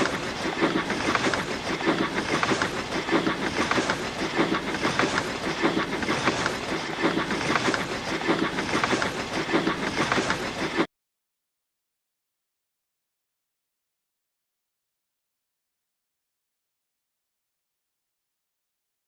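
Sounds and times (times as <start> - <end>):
steam locomotive puffing: 0.0 - 10.9
train wheels clacking on rails: 0.0 - 10.9.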